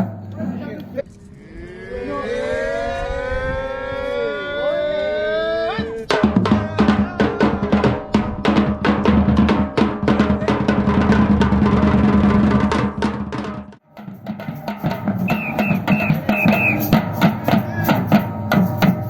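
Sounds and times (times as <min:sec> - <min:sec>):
drum ensemble fast rhythm: 0:06.1 - 0:19.0.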